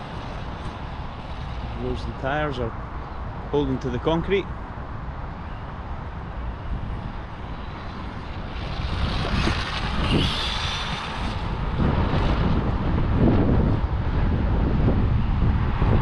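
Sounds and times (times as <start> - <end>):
rc car motor whine: 0.0 - 2.5, 6.4 - 13.9.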